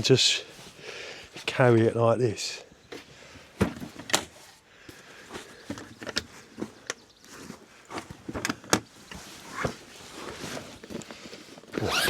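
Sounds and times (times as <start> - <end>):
camping gear knocking and clicking: 2.9 - 7.1, 7.9 - 9.8.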